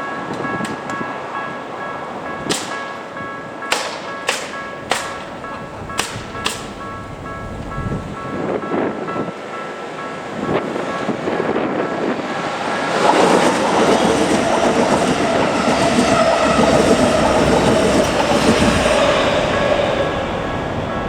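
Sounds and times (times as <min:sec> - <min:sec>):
crossing warning bell ringing: 0:00.0 - 0:21.0
electric train passing: 0:00.0 - 0:21.0
wheels clattering over rail joints: 0:02.2 - 0:08.3, 0:10.5 - 0:21.0.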